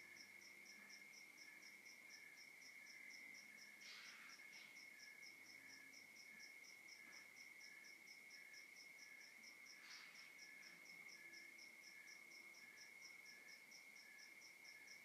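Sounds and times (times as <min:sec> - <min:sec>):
crickets chirping: 0:00.0 - 0:15.0.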